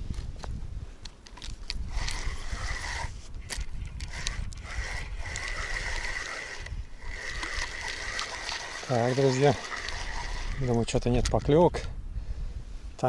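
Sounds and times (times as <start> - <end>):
reel clicks: 0.1 - 11.9
fishing reel whirring: 1.4 - 11.5.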